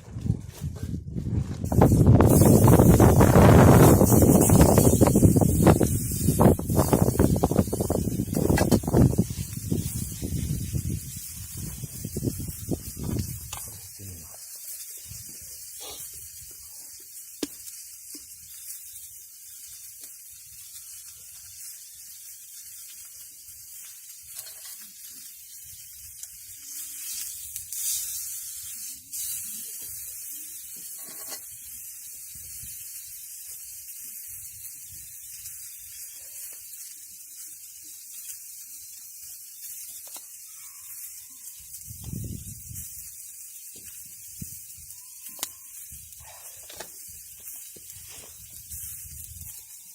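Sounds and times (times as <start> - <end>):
food sizzling in a frying pan: 1.6 - 49.9.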